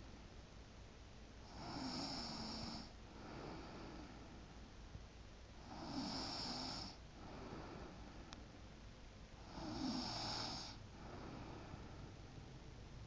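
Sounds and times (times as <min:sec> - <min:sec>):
rasping snores: 0:01.5 - 0:04.0, 0:05.6 - 0:07.0, 0:09.4 - 0:11.7.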